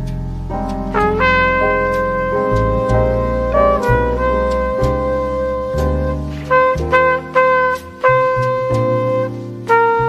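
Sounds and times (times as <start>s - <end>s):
bass line: 0.0s - 10.0s
horn holding long notes: 1.0s - 10.0s.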